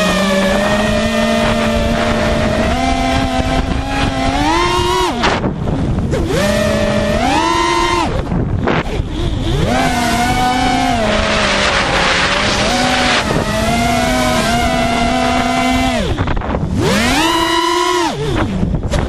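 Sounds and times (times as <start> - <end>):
drone motors and propellers whining: 0.0 - 19.0
wind on microphone: 0.0 - 19.0.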